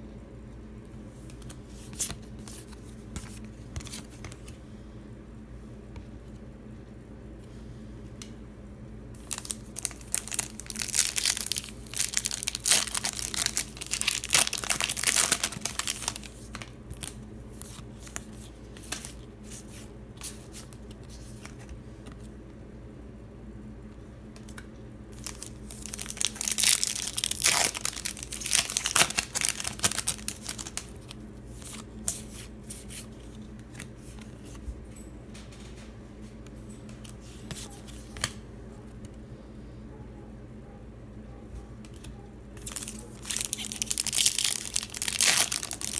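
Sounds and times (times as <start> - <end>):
card packaging tearing and rustling: 9.2 - 18.2, 25.2 - 32.4, 42.6 - 45.9.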